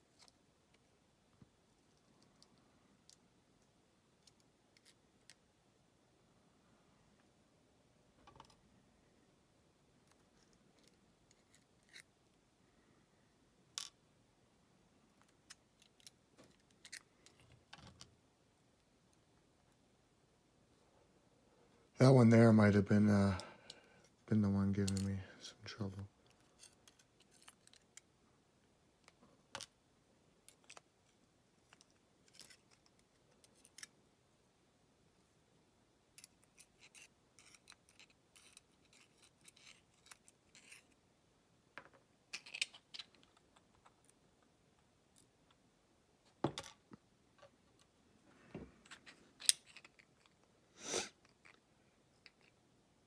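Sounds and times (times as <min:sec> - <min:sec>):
small metal parts clicking: 0:42.3 - 0:43.5.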